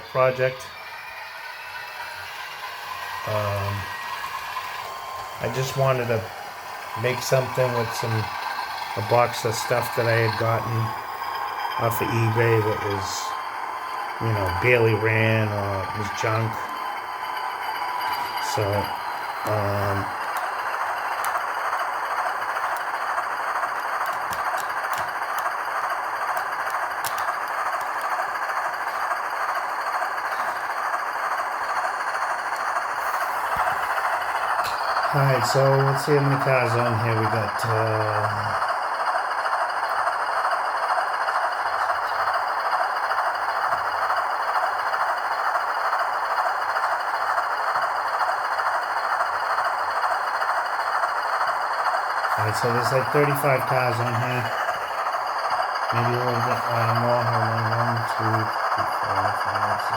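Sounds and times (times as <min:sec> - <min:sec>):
diesel engine sound from speaker: 0:00.0 - 0:11.1, 0:11.7 - 0:13.4, 0:14.2 - 0:16.9, 0:17.8 - 0:39.2, 0:46.4 - 0:59.9
model locomotive motor whirring: 0:00.0 - 0:59.9
sharp clicks: 0:24.0 - 0:29.2.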